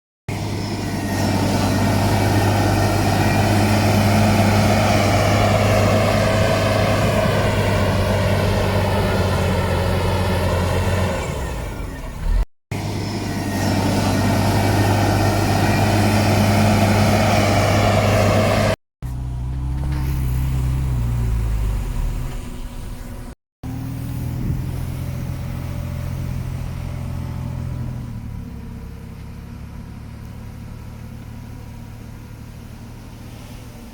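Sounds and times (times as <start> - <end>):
heavy diesel engines under load: 0.3 - 33.9.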